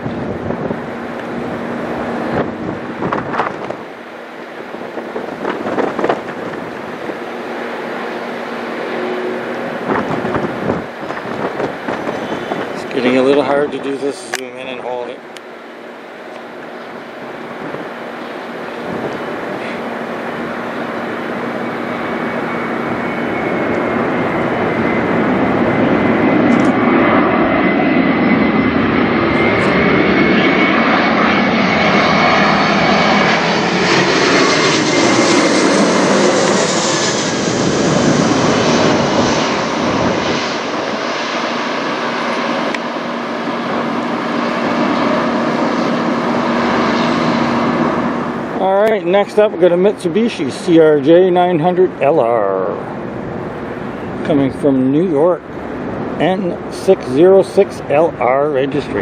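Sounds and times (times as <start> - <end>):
jet airliner flying over: 0.0 - 59.0.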